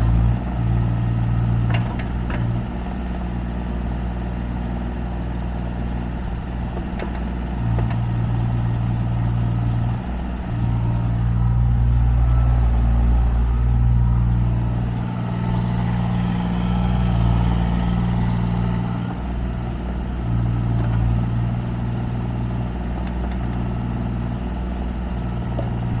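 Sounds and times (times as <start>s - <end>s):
excavator diesel engine running: 0.0s - 26.0s.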